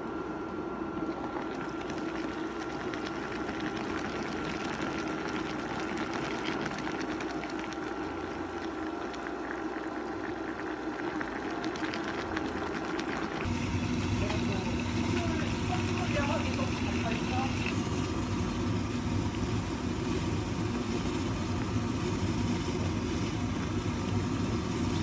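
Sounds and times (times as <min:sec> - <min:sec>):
liquid boiling and bubbling: 0:00.6 - 0:25.0.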